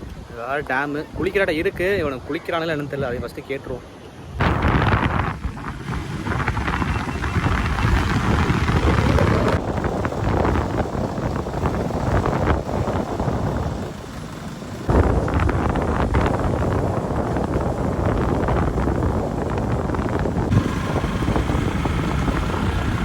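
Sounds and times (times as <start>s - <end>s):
wind buffeting microphone: 4.2s - 23.0s
motorcycle engine: 4.4s - 23.0s.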